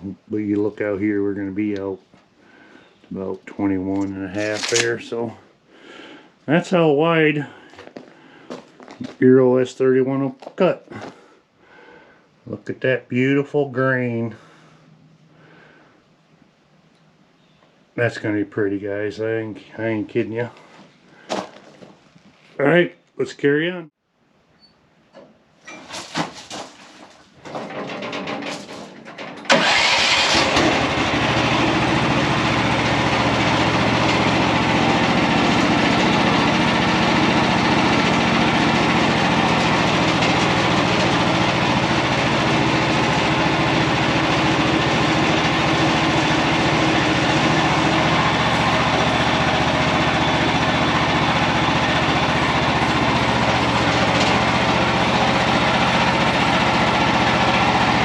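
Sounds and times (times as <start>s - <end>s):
gasoline engine starting and running: 27.4s - 58.0s.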